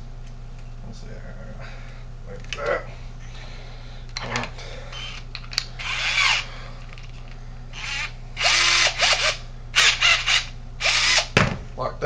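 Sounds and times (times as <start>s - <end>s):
power drill motor whirring: 4.9s - 6.5s, 7.8s - 11.4s.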